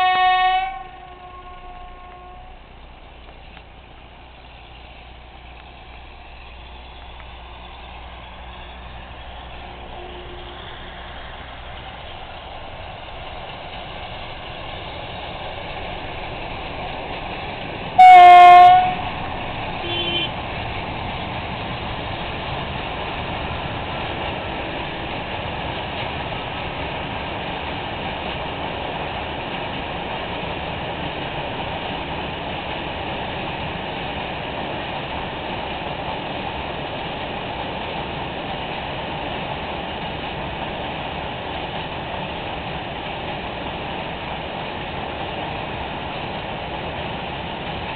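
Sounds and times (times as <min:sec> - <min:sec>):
loud train horn blast: 0:00.0 - 0:02.6, 0:09.7 - 0:10.9, 0:18.0 - 0:20.4
freight train passing: 0:00.0 - 0:47.9
short faint horn toot: 0:09.8 - 0:10.8, 0:18.0 - 0:19.1, 0:19.8 - 0:20.4.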